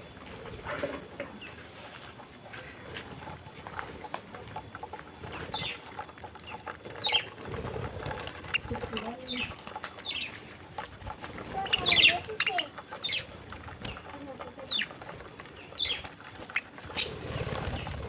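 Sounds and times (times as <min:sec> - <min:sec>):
budgerigars chirping: 0:05.3 - 0:05.8, 0:06.4 - 0:07.4, 0:08.4 - 0:10.4, 0:11.5 - 0:14.0, 0:15.6 - 0:18.0.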